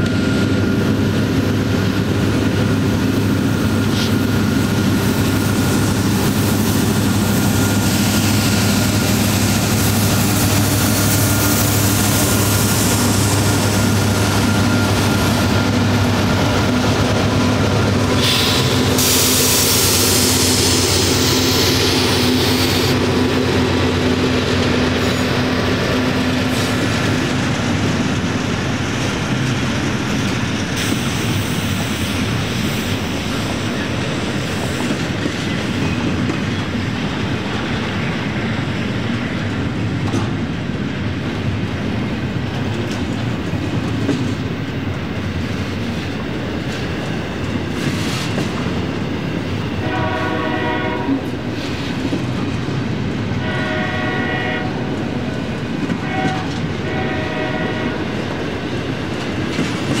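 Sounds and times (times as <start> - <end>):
freight train rumble and clatter: 0.0 - 60.0
locomotive horn: 49.8 - 51.4, 53.4 - 55.0, 56.0 - 58.3.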